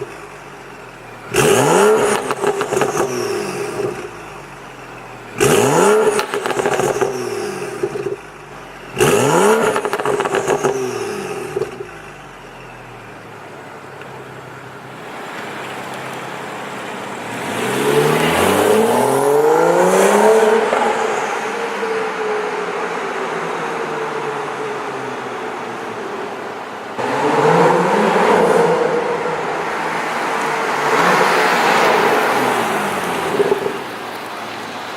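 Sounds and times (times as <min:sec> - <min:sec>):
car engine revving: 0:00.0 - 0:13.2, 0:16.6 - 0:34.6
exhaust popping and crackling: 0:00.0 - 0:15.4, 0:27.0 - 0:34.3.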